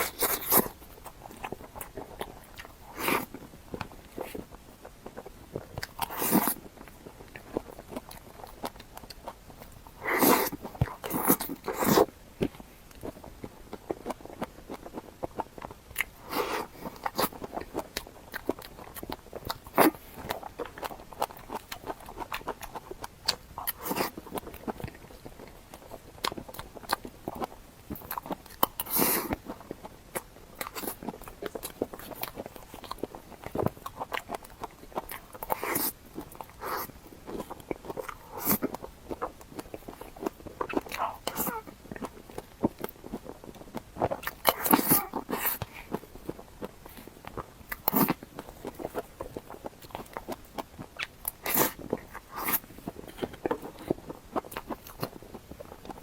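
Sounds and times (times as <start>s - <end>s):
person chewing food: 0.0s - 56.0s
crunchy bites: 26.2s - 56.0s.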